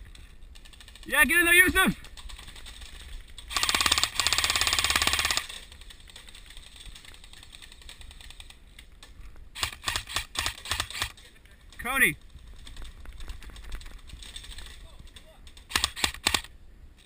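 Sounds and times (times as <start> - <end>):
airsoft gun full-auto burst: 3.5 - 5.6, 9.6 - 11.1, 15.7 - 16.5
sharp snaps: 15.7 - 16.5.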